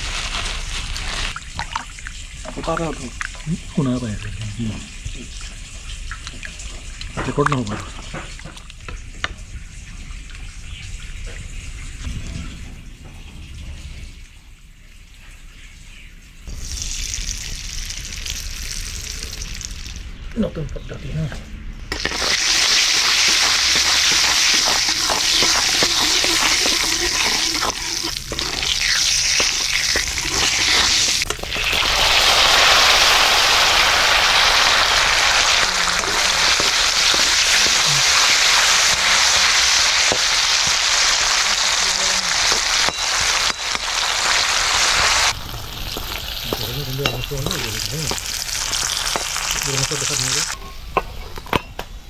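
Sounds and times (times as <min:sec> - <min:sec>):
meat sizzling in hot oil: 0:16.5 - 0:20.1, 0:21.9 - 0:50.6
scraping in a pan: 0:22.0 - 0:33.1, 0:34.3 - 0:50.4.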